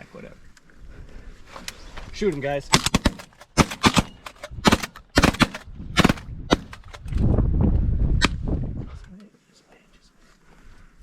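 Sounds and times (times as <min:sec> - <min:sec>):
shotgun fire: 0:02.7 - 0:07.0.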